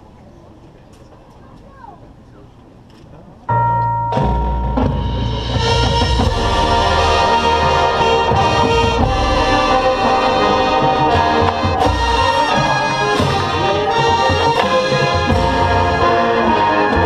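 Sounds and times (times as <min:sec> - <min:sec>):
marching band playing: 0:04.0 - 0:17.0.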